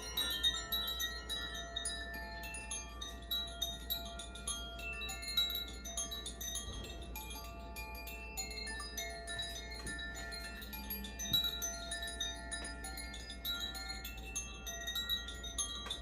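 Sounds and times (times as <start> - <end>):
metal chimes ringing: 0.0 - 16.0.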